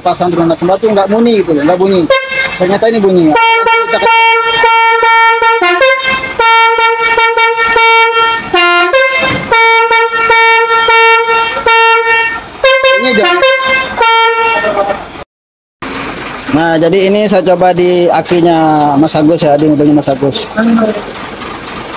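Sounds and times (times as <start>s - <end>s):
musical air horn notes: 2.1s - 15.0s.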